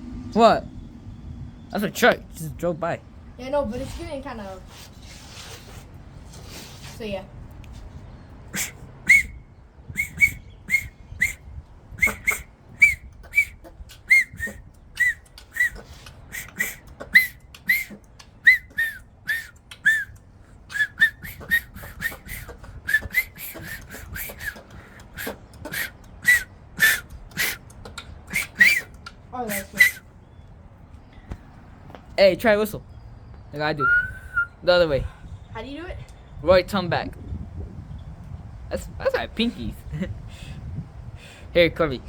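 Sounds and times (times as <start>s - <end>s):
breathy whistle chirps: 8.5s - 30.2s, 33.8s - 34.6s.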